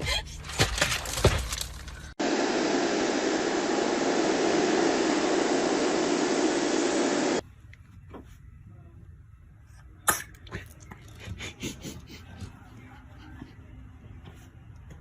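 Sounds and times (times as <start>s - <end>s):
loud rushing noise: 2.2s - 7.4s.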